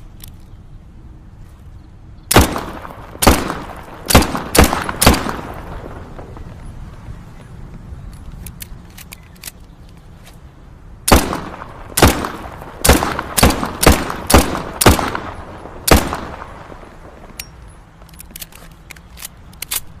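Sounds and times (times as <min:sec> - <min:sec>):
faint small clicks: 0:00.1 - 0:00.6, 0:08.1 - 0:10.4, 0:17.4 - 0:20.0
pistol shots: 0:02.3 - 0:06.3, 0:11.1 - 0:17.2.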